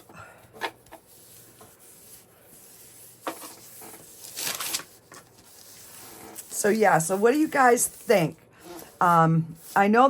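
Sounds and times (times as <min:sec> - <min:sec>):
baby wipe rubbing and rustling: 0:01.3 - 0:09.0.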